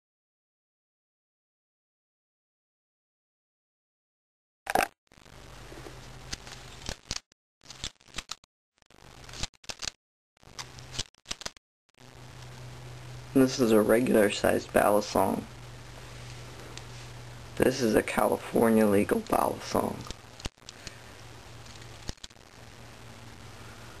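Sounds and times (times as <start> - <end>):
low steady hum: 4.7 - 7.0, 12.0 - 24.0.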